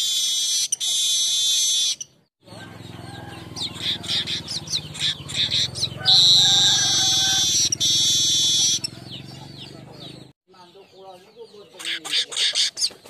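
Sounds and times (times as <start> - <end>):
bird buzzy trill: 0.0 - 9.5.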